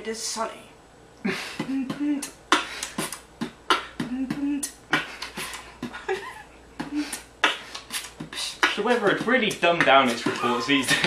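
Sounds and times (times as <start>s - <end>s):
short hummed notes: 1.3s - 6.1s
person beatboxing: 1.5s - 6.2s, 6.8s - 11.0s.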